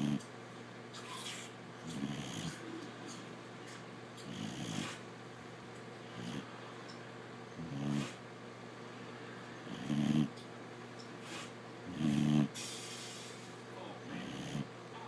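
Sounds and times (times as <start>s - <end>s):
pet snoring: 0.0s - 0.3s, 1.0s - 2.6s, 4.2s - 5.0s, 6.0s - 6.5s, 7.6s - 8.2s, 9.6s - 10.4s, 11.2s - 13.3s, 14.0s - 14.7s.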